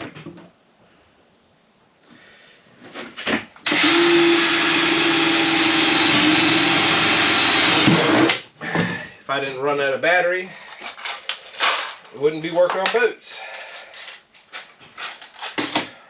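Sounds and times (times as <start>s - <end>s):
power tool motor running: 3.7s - 8.4s
handling and clatter: 10.6s - 16.0s.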